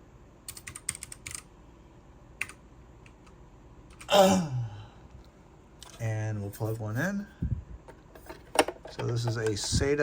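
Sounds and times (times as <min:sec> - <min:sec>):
computer keyboard typing: 0:00.4 - 0:01.5, 0:02.4 - 0:03.2.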